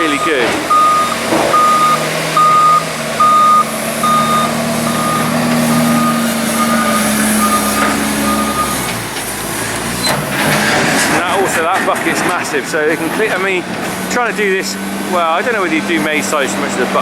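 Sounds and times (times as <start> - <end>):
reversing alarm beeping: 0.0 - 8.9
diesel engine: 0.0 - 17.0.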